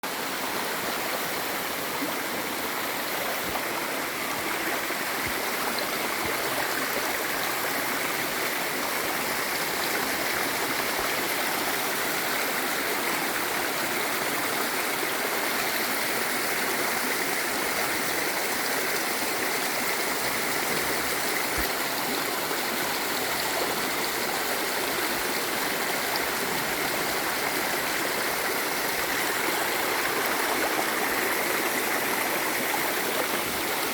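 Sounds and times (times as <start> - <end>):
flowing water rushing: 0.0 - 33.9.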